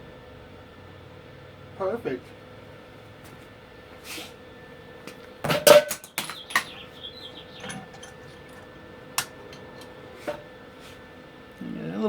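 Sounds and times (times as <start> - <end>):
metal parts knocking and clicking: 5.7 - 6.8, 7.5 - 10.4
light scraping: 7.4 - 11.0.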